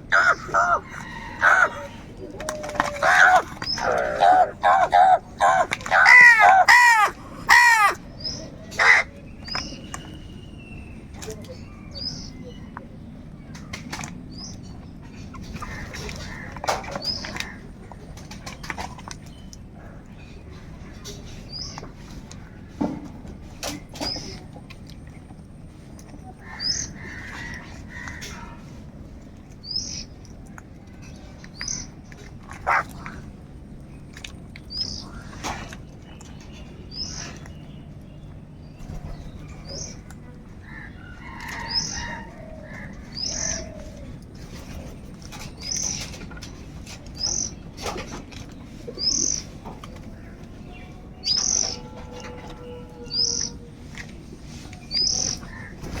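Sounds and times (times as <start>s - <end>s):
low background rumble: 0.0s - 56.0s
crow cawing: 0.1s - 2.0s, 2.8s - 8.0s, 8.8s - 9.1s, 32.7s - 32.9s.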